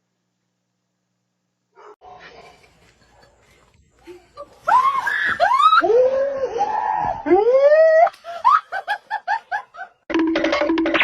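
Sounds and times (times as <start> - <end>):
person laughing in high pitch: 7.3 - 10.0.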